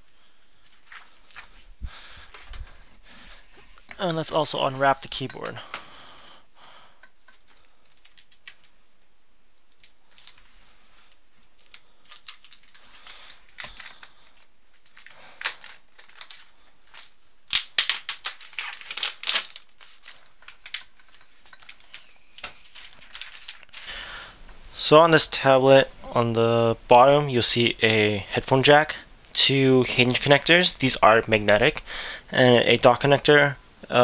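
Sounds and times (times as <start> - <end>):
plastic wrapping crinkling: 0.0 - 6.4, 7.2 - 8.8, 9.7 - 24.1.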